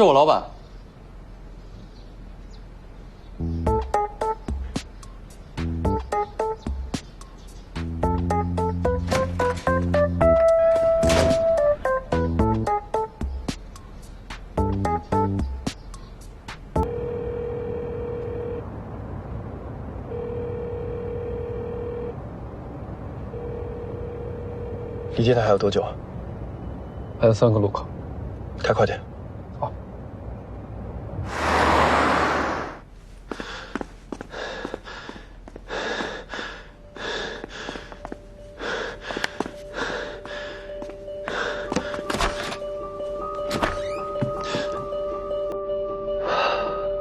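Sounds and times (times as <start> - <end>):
telephone ringback tone: 16.8 - 18.7, 20.1 - 22.2, 23.3 - 25.4
person panting: 33.3 - 42.1.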